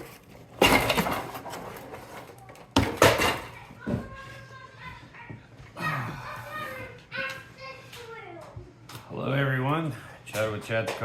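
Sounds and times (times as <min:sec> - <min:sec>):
children shouting and squealing: 0:03.4 - 0:08.6.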